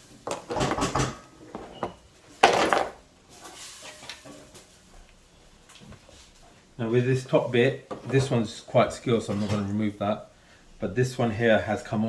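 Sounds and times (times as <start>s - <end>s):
small hard items clattering: 0.2s - 4.5s.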